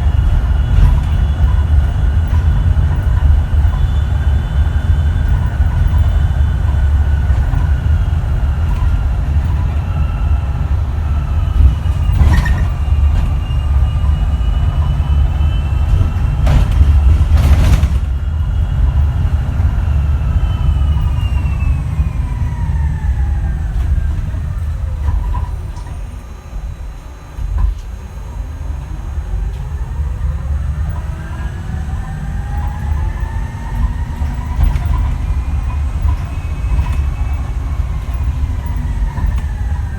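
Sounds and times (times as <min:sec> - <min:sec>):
heavy road rumble: 0:00.0 - 0:39.9
bus body knocks: 0:11.2 - 0:19.8.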